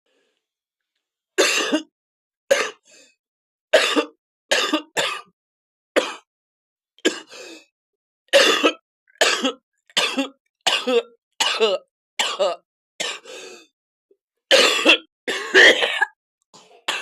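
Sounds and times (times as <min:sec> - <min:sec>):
person coughing: 0:01.4 - 0:01.9, 0:03.8 - 0:05.3, 0:08.4 - 0:13.2, 0:14.5 - 0:16.2.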